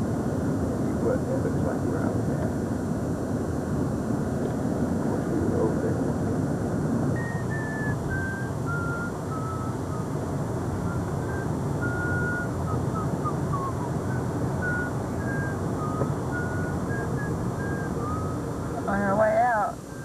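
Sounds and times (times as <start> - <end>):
car rumble from inside: 0.0 - 20.0
short high whistle-like tones: 7.2 - 10.1, 10.8 - 18.5.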